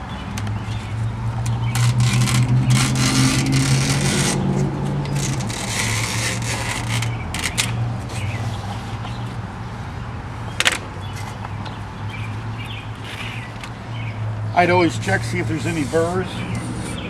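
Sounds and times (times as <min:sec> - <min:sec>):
light scraping: 0:01.7 - 0:10.0, 0:14.8 - 0:17.0.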